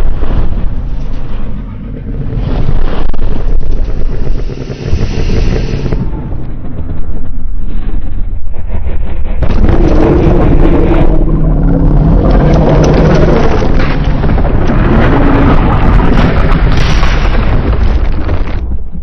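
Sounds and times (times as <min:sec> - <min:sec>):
synthetic monster roar: 0:09.4 - 0:17.3.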